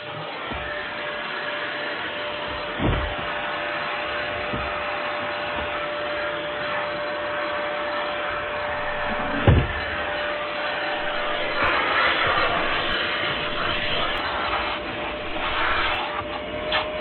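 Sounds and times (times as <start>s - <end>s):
vacuum cleaner running: 0.0s - 17.0s
dull thump: 2.6s - 3.4s, 8.9s - 10.0s.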